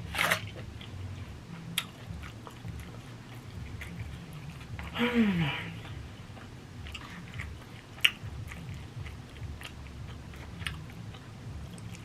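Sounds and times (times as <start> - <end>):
person chewing food: 0.0 - 12.0
wet mouth clicks: 6.4 - 12.0.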